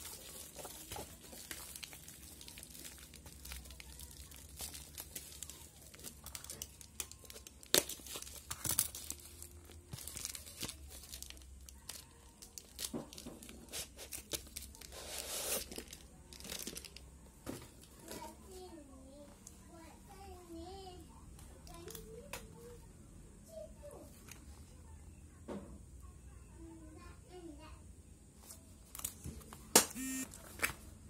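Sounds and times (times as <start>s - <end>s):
packaging crinkling and tearing: 0.0s - 17.0s.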